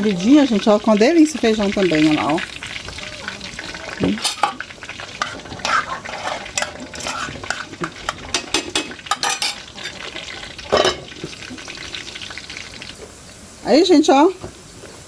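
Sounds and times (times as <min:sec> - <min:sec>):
food sizzling in a pan: 0:00.0 - 0:15.0
metal spoon scraping a pan: 0:00.5 - 0:11.4.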